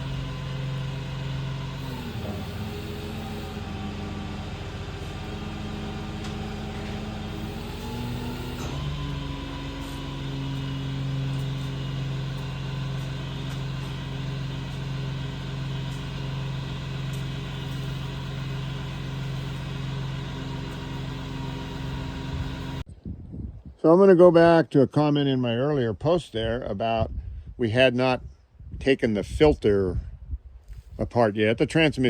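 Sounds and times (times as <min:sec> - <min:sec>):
engine running and revving up: 0:00.0 - 0:22.9.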